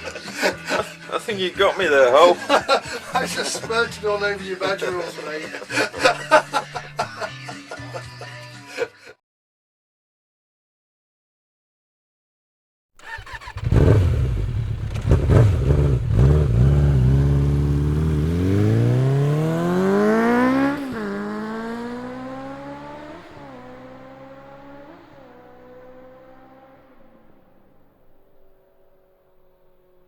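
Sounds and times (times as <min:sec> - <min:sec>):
motorcycle engine accelerating: 0:13.0 - 0:30.0.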